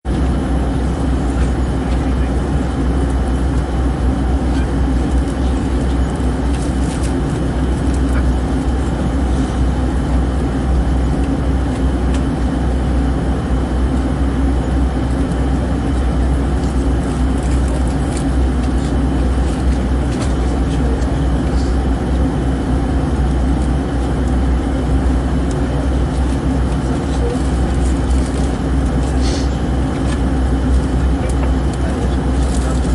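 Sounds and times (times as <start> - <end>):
aeroplane engine drone: 0.0 - 32.9
constant hum: 0.0 - 32.9.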